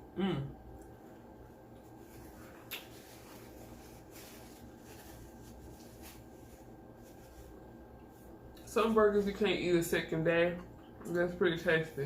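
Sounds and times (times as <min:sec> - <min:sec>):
chewing and mouth sounds: 0:02.5 - 0:03.0.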